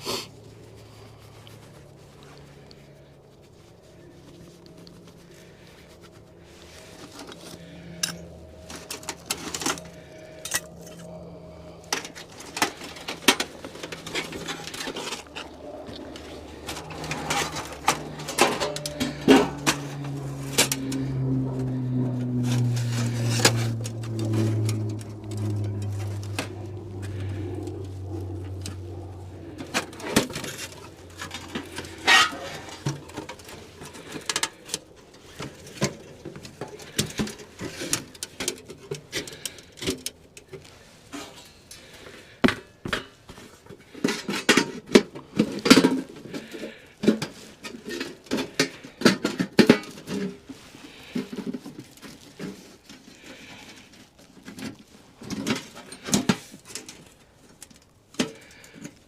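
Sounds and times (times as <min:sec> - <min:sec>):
low hum: 0:00.3 - 0:42.4.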